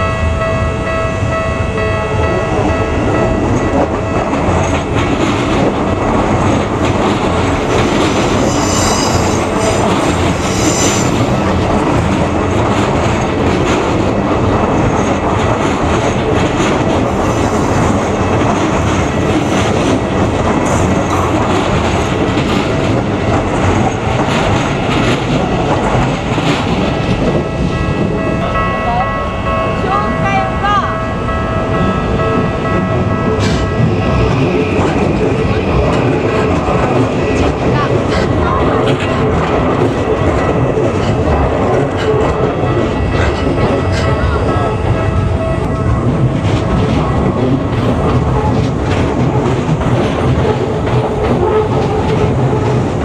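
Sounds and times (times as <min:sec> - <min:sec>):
train wheels clattering: 0:03.4 - 0:30.3, 0:31.8 - 0:53.0
train wheels squealing: 0:06.8 - 0:12.2.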